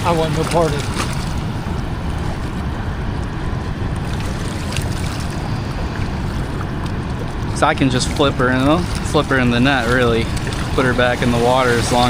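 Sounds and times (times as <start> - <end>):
water rushing over a dam spillway: 7.3 - 12.0.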